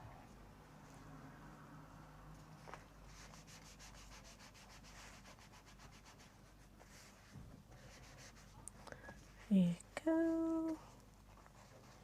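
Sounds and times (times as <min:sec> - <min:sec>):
fabric rubbing by hand: 0:02.5 - 0:08.6.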